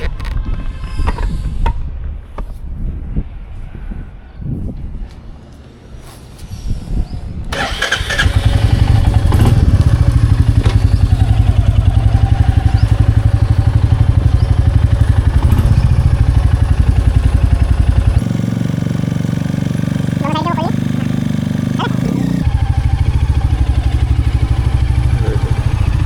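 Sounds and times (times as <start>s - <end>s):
motorcycle engine starting and idling: 7.5s - 26.0s.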